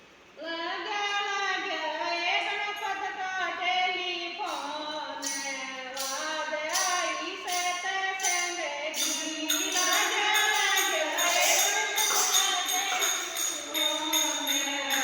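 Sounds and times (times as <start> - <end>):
voices singing devotional song: 2.2 - 15.0
jingling hand percussion: 4.4 - 15.0.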